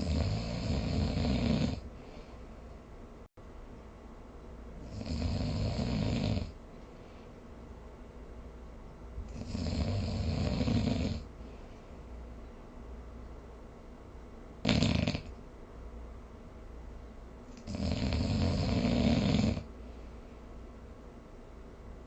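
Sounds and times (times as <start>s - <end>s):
person snoring: 0.0s - 2.1s, 4.8s - 6.6s, 9.3s - 11.3s, 14.6s - 15.4s, 17.6s - 19.7s
quiet breathing: 0.0s - 2.9s, 4.8s - 7.7s, 9.2s - 12.8s, 17.5s - 20.9s.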